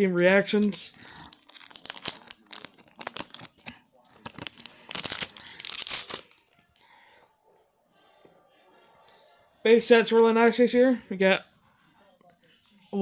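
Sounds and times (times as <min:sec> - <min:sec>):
wrapper tearing and crinkling: 0:00.3 - 0:06.8.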